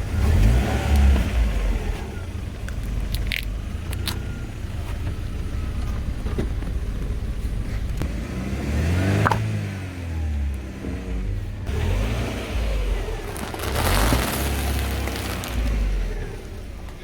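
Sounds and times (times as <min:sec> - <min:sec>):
car engine revving: 0:00.0 - 0:17.0
sharp cracks: 0:13.1 - 0:17.0.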